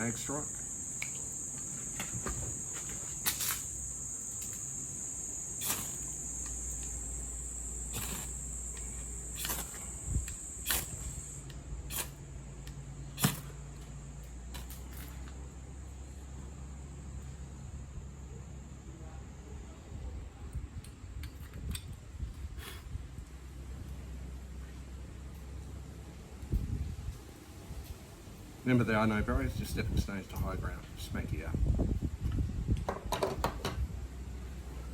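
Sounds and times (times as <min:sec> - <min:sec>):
cricket chorus: 0:00.0 - 0:20.3
ferro rod scraped with striker: 0:11.9 - 0:12.2.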